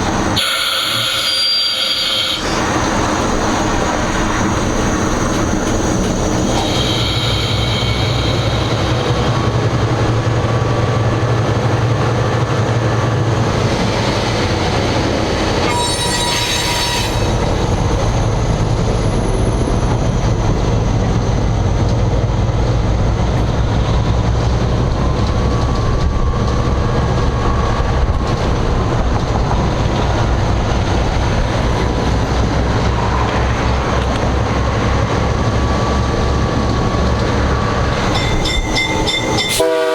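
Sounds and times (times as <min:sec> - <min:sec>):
high-pitched squeal: 0:00.0 - 0:10.0, 0:13.6 - 0:20.2, 0:37.5 - 0:39.9
locomotive diesel engine droning: 0:00.0 - 0:39.9.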